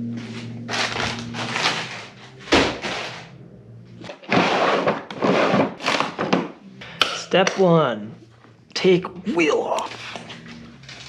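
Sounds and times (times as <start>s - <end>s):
scraping and rustling: 0.2s - 3.4s, 4.0s - 6.5s.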